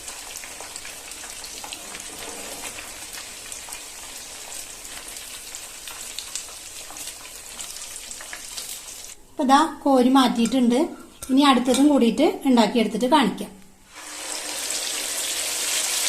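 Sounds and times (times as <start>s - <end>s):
chicken deep-frying in oil: 0.0s - 9.2s, 13.9s - 16.0s.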